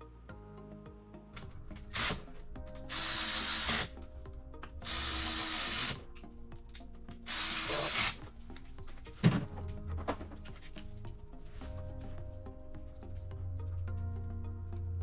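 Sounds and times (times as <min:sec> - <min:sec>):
background music: 0:00.0 - 0:15.0
power tool running: 0:01.9 - 0:02.2, 0:02.9 - 0:03.9, 0:04.8 - 0:06.0, 0:07.3 - 0:08.2.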